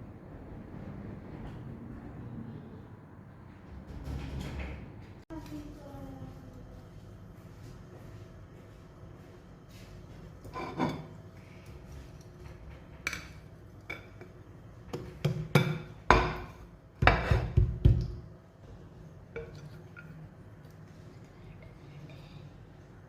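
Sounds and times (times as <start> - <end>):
kitchenware clinking and knocking: 10.5 - 11.1, 14.9 - 18.2.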